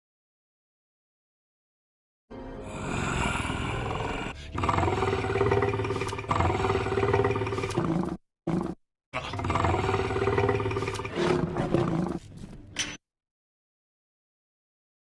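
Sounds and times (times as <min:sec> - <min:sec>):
cartoon alligator roars: 0:02.6 - 0:12.2.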